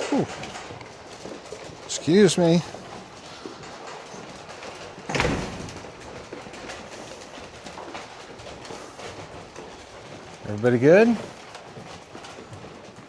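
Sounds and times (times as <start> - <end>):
hooves clattering and shuffling: 0.0 - 13.0
loud knock: 5.1 - 6.0.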